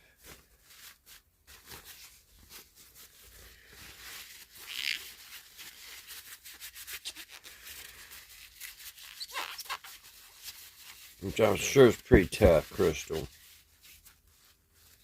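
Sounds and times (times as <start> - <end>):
cloth rubbing on glass lens: 0.7 - 15.0.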